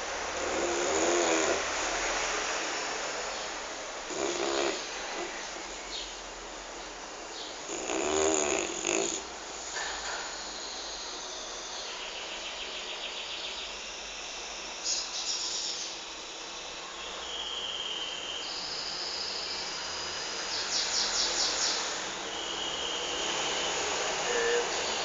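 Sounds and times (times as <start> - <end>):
steady hiss: 0.0 - 25.0
insect trilling and chirping: 0.4 - 1.6, 10.3 - 25.0.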